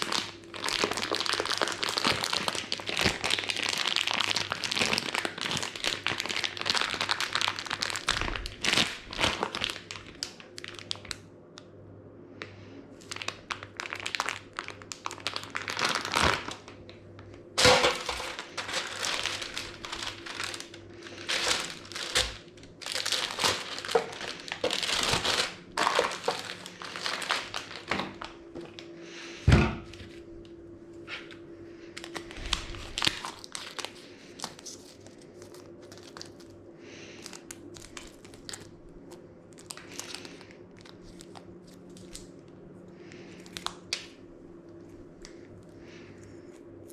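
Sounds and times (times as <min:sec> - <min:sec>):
packaging crinkling and rustling: 0:00.0 - 0:11.3, 0:13.0 - 0:28.9, 0:31.2 - 0:46.9.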